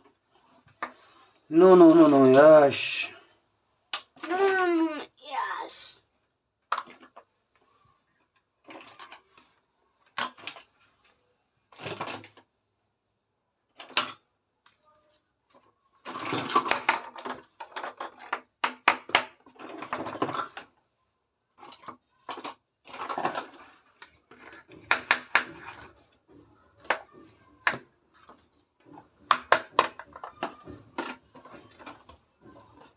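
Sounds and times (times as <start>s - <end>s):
plastic toy pieces clattering: 6.7s - 7.2s, 8.6s - 10.8s, 15.5s - 20.8s, 21.6s - 32.9s.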